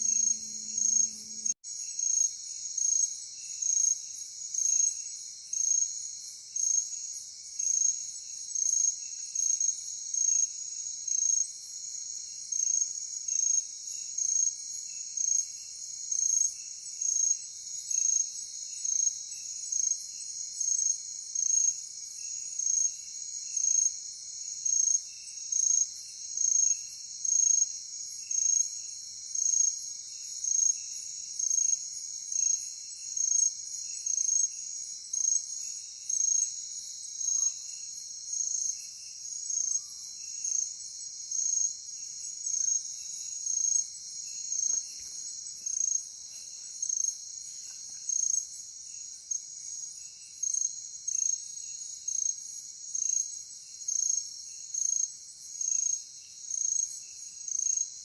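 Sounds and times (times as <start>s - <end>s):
high-pitched insect drone: 0.0s - 2.1s
crickets chirping: 0.0s - 58.0s.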